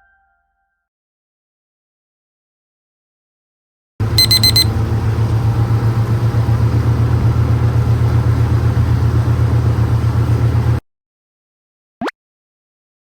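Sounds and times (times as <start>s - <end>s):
engine throbbing: 4.0s - 10.8s.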